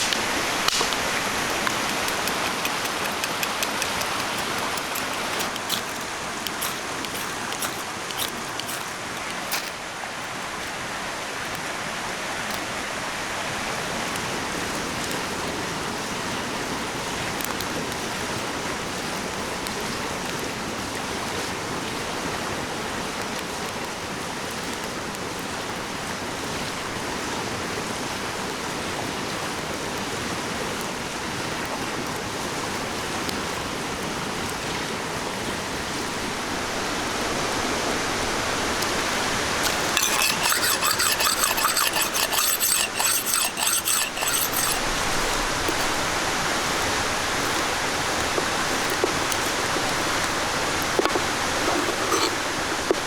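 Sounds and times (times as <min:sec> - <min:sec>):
running water rushing: 0:00.0 - 0:17.3, 0:35.4 - 0:53.0
sharp clicks: 0:00.1 - 0:07.6.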